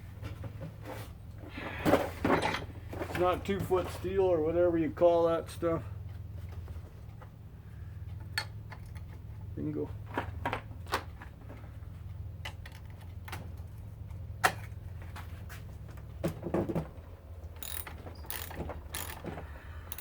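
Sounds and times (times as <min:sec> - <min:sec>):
metallic clicks and knocks of tools: 0:17.4 - 0:20.0.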